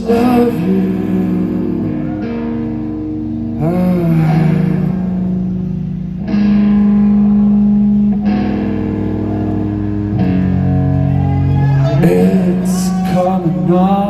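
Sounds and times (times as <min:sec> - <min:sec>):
electric guitar chords: 0:00.0 - 0:14.0
live rock band playing: 0:00.0 - 0:14.0.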